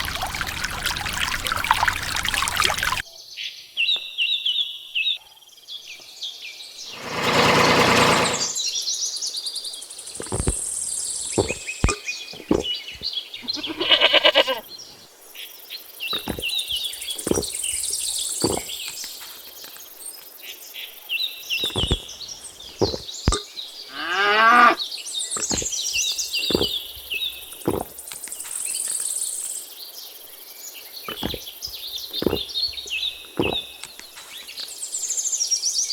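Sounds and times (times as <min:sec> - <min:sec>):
birds chirping: 0:00.0 - 0:03.0, 0:09.9 - 0:29.5, 0:30.9 - 0:35.1
farm animal calls: 0:13.4 - 0:14.6, 0:23.9 - 0:24.8.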